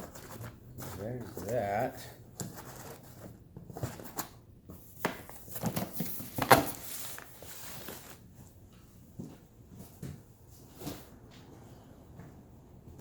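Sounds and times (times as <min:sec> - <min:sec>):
packing rustling: 0:05.3 - 0:08.2.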